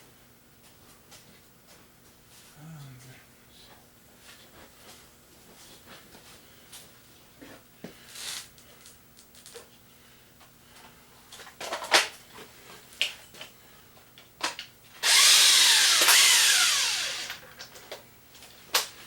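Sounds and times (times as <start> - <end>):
impact wrench burst: 15.0 - 17.4.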